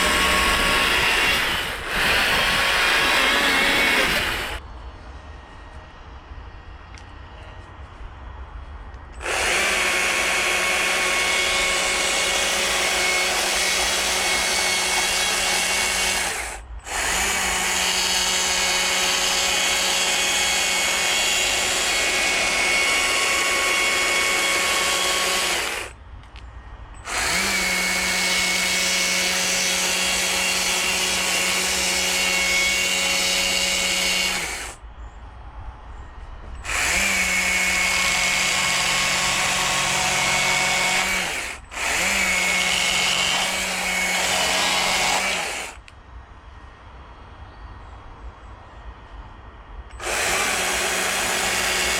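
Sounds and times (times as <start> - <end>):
chainsaw cutting wood: 0.0 - 4.6, 9.2 - 26.0, 27.0 - 34.8, 36.6 - 45.8, 50.0 - 51.9.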